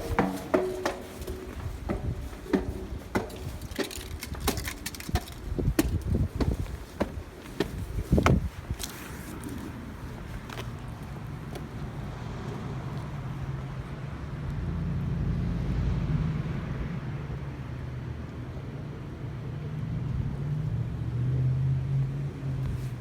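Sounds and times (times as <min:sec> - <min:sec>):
vehicle engine humming: 0:00.0 - 0:12.5.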